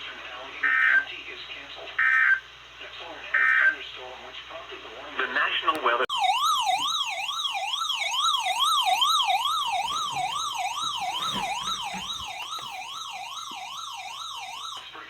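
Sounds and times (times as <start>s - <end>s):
electronic siren warning tone: 6.1s - 15.0s.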